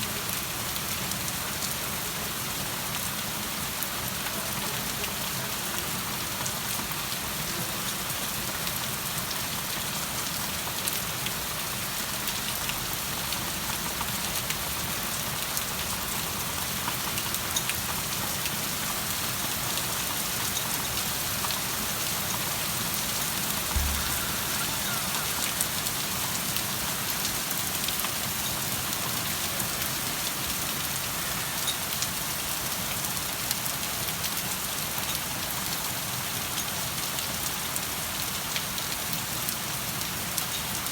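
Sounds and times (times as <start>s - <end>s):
rain pattering: 0.0s - 40.9s
low thump: 23.7s - 25.5s.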